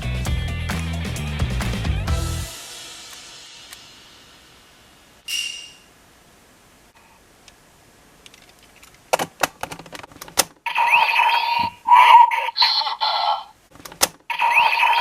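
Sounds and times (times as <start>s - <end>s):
toy beeping with sliding pitches: 10.7s - 13.5s, 14.3s - 15.0s.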